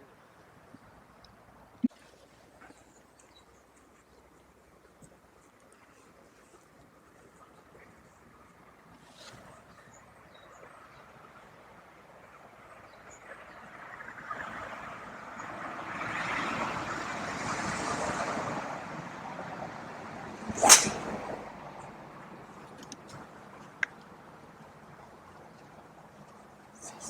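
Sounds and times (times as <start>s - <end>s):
wind rushing over microphone: 17.7s - 21.7s
golf club striking ball: 20.5s - 21.4s.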